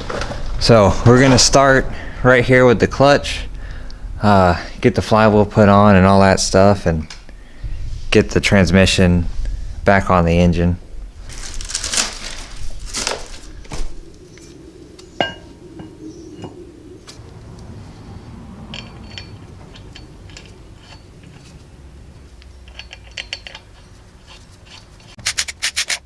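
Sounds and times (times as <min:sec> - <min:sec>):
sharp ringing clink: 0:15.2 - 0:16.5, 0:18.7 - 0:21.2
steel parts and tools clinking: 0:15.2 - 0:16.5, 0:18.6 - 0:26.0.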